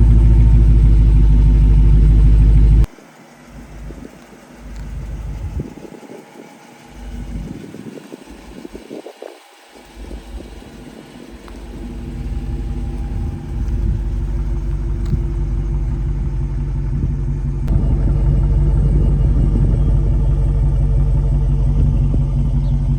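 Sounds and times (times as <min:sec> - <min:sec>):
engine humming: 0:00.0 - 0:22.9.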